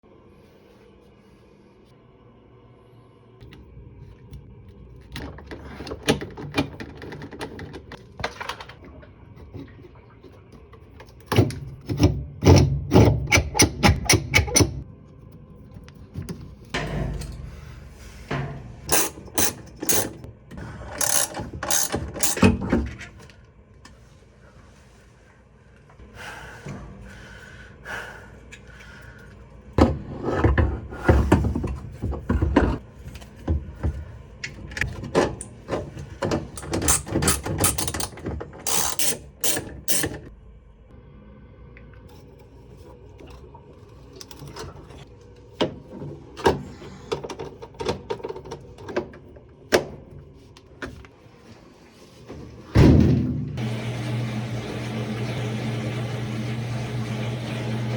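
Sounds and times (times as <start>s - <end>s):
washing machine motor humming: 15.8s - 23.6s, 28.5s - 50.4s, 51.2s - 57.9s
knocks and clanks of tools: 16.2s - 20.3s.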